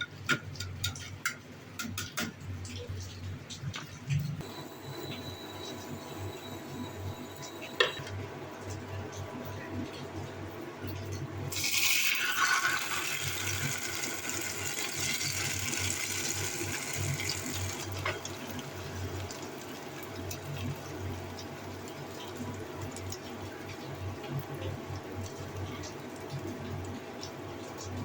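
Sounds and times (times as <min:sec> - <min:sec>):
water running from a tap: 0:11.5 - 0:24.6.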